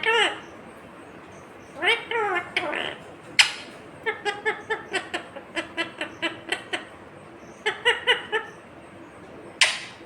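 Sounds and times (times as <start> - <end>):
parrot squawking: 0.0 - 0.6, 1.7 - 7.0, 7.6 - 8.6, 9.6 - 10.0.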